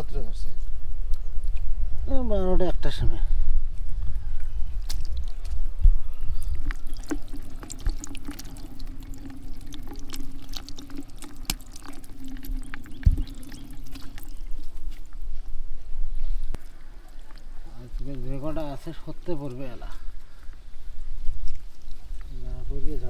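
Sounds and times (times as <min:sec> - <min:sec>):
small splashes and clicks: 0:04.8 - 0:05.6, 0:06.3 - 0:15.2
water pouring and dripping: 0:04.8 - 0:15.2.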